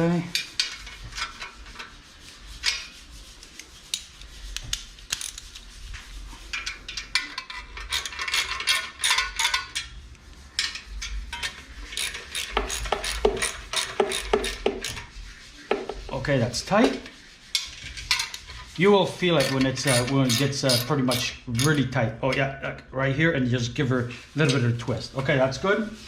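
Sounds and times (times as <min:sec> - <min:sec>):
metal tools clinking and scraping: 0:00.2 - 0:02.0, 0:02.6 - 0:03.0, 0:06.4 - 0:15.1, 0:16.7 - 0:22.5
ratchet wrench clicking: 0:11.9 - 0:15.0.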